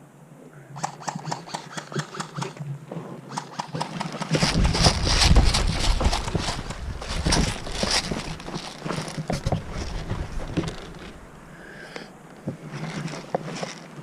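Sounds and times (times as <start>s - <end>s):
footsteps on wooden boards: 4.4s - 11.3s.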